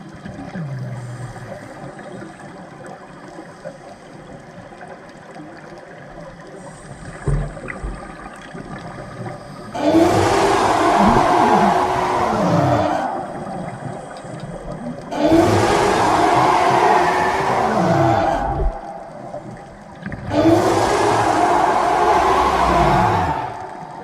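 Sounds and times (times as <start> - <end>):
faint underwater rumble: 0.0 - 16.8, 17.4 - 21.4
wavering low tones: 9.8 - 14.0, 15.3 - 24.0
loud underwater rushing: 9.8 - 14.1, 15.1 - 24.0.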